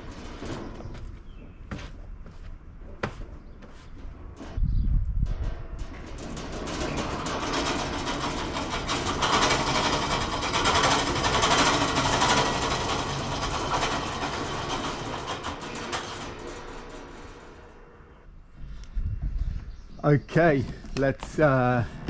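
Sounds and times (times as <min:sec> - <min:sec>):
bandsaw mill clattering: 0:00.0 - 0:04.6, 0:05.7 - 0:18.2.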